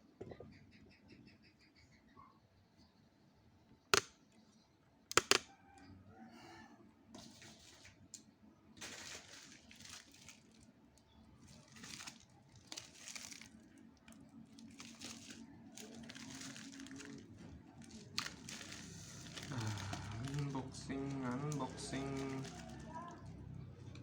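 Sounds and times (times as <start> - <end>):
packaging crinkling: 8.8 - 23.5.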